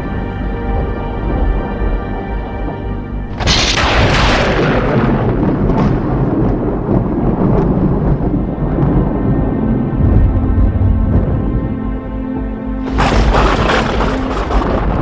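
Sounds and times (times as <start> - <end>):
dark background music: 0.0 - 15.0
loud crash: 3.3 - 6.2.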